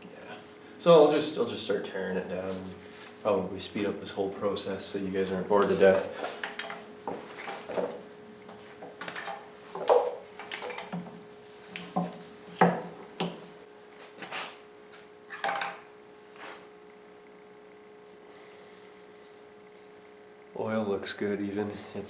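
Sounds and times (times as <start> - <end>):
faint steady hum: 0.0 - 22.0
metal tools and parts clanking: 6.4 - 6.8.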